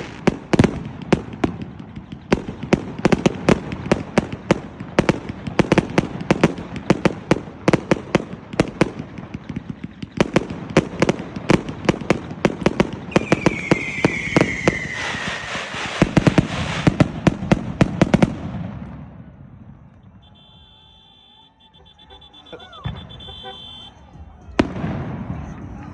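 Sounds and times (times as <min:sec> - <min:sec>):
firework cake bangs: 0:00.0 - 0:19.1
firework crackle: 0:00.0 - 0:21.4
falling whistle: 0:13.2 - 0:16.0, 0:20.1 - 0:24.1.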